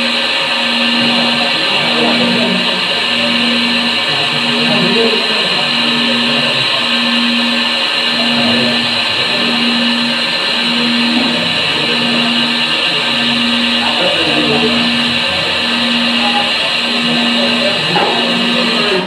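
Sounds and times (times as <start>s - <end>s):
machine whirring: 0.0s - 19.0s
pulsing low hum: 0.0s - 19.0s.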